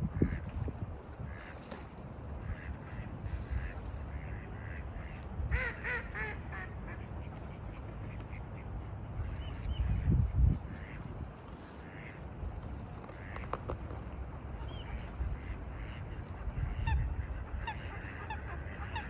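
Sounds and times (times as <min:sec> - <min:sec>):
ducks quacking: 0:00.0 - 0:13.7, 0:14.5 - 0:19.0
steady low rumble: 0:00.0 - 0:19.0.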